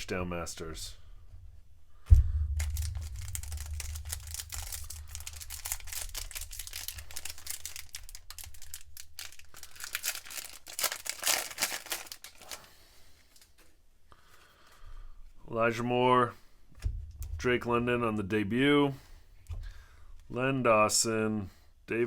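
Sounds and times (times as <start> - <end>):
sharp knock: 2.1 - 6.3
foil wrapper crinkling and tearing: 2.6 - 13.5.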